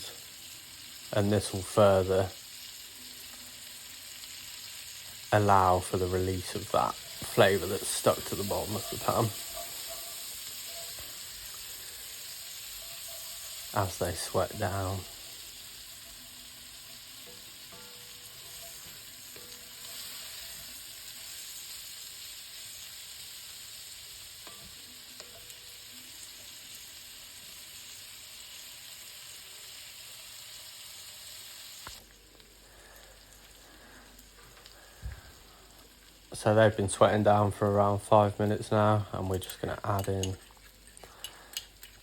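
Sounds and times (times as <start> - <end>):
onions sizzling in a pan: 0.0 - 42.0
stirring spoon ticks: 39.3 - 42.0.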